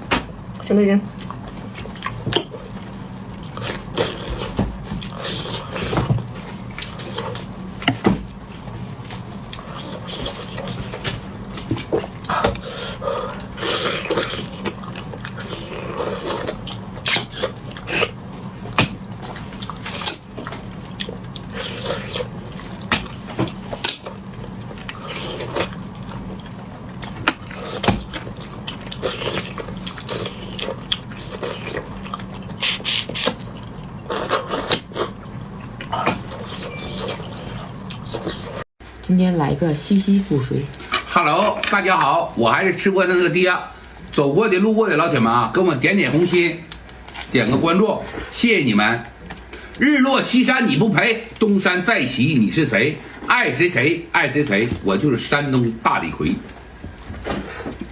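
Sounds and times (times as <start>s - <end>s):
steady low hum: 0.0s - 57.9s
wet slurping mouth sounds: 32.5s - 35.2s.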